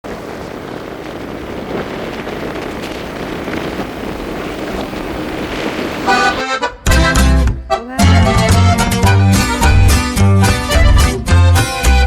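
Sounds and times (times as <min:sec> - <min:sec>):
wind on microphone: 0:00.0 - 0:07.4
pitched instrument music: 0:06.1 - 0:12.0.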